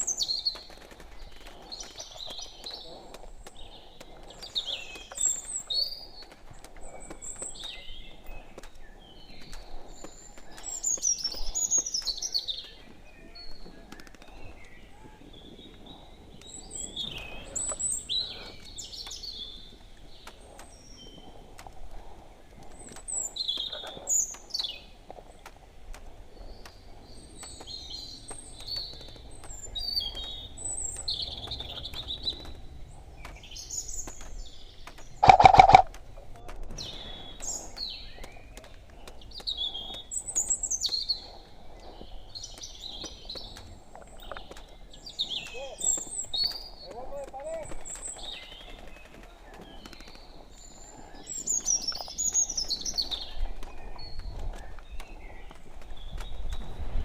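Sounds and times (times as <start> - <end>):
small birds chirping: 0.0 - 57.0
burst of rapid shots: 35.2 - 35.8.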